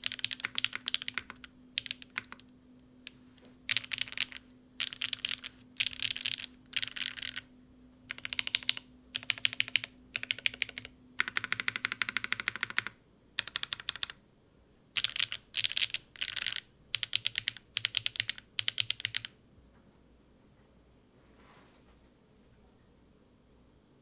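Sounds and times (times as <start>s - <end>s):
typing on mechanical keyboard: 0.0s - 7.5s, 8.1s - 14.2s, 15.0s - 19.4s.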